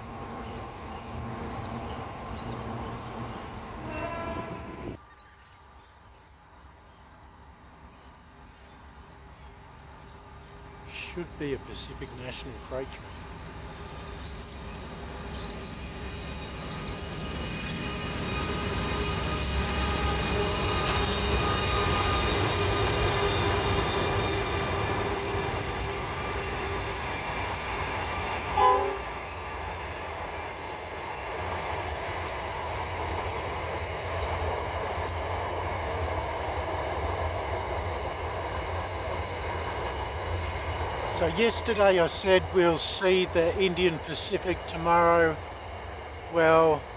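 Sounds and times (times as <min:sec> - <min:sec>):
locomotive engines droning: 0:00.0 - 0:05.0, 0:08.7 - 0:46.9
train wagons rumbling: 0:00.0 - 0:05.0, 0:10.3 - 0:46.9
loud train horn blast: 0:03.7 - 0:05.0, 0:28.4 - 0:29.2.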